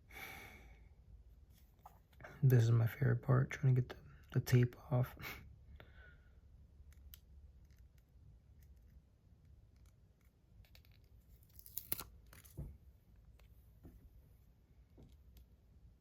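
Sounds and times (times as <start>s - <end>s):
adhesive tape being picked off: 6.9s - 12.6s.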